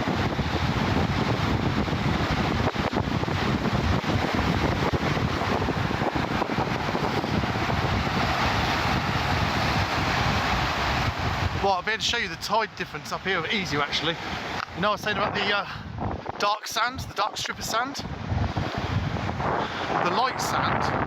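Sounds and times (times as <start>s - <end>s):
strong wind buffeting microphone: 0.0s - 21.0s.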